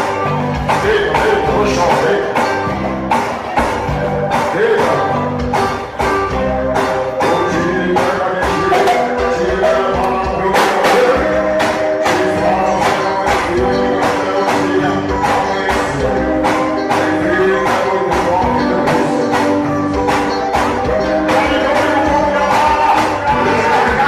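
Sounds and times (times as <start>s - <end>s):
music with steady beat: 0.0s - 24.0s.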